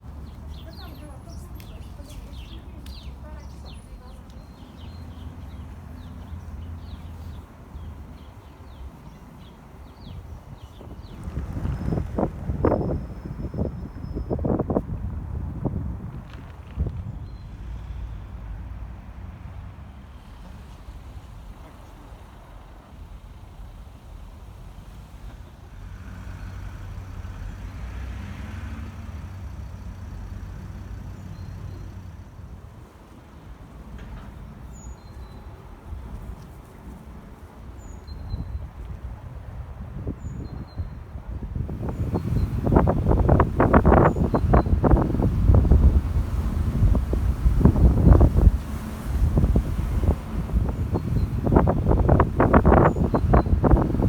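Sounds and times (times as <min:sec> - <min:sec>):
vehicle passing road noise: 0:00.0 - 0:21.5, 0:25.7 - 0:34.4, 0:39.0 - 0:54.0
engine hum: 0:00.0 - 0:23.2, 0:24.1 - 0:34.8, 0:38.3 - 0:54.0
small birds chirping: 0:00.1 - 0:14.7, 0:40.2 - 0:48.6, 0:49.4 - 0:54.0
steady low rumble: 0:41.3 - 0:54.0.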